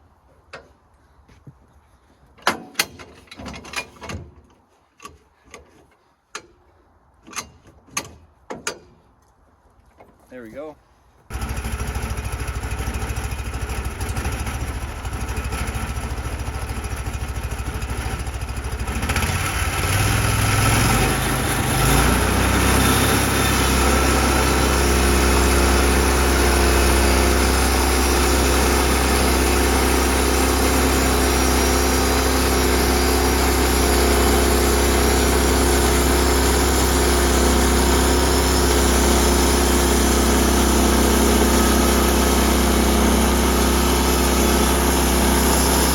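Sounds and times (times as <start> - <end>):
sawmill gasoline engine running: 11.3 - 45.9.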